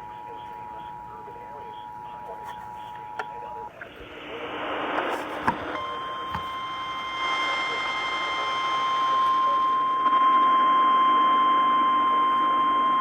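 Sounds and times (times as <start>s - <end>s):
radio static hiss: 0.0s - 10.2s.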